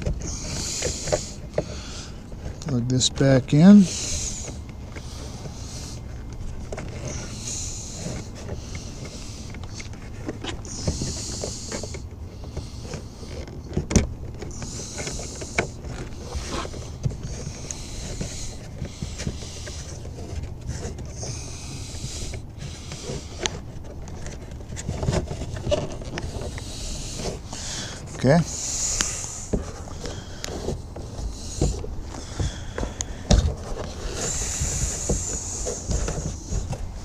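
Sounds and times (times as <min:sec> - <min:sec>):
hissy rubbing sounds: 0:00.0 - 0:37.0
steady low hum: 0:00.0 - 0:37.0.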